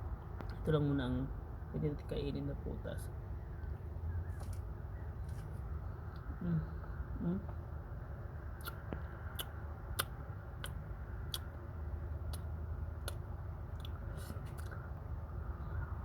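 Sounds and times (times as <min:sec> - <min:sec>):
chewing with crunches: 0:08.6 - 0:11.6.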